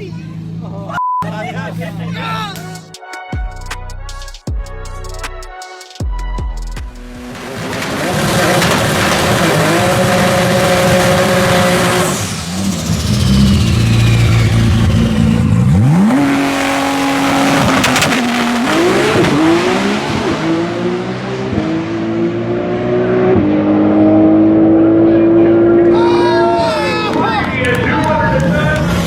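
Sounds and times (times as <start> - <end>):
race car engine running hard: 7.2 - 25.9
falling whistle: 13.0 - 15.5.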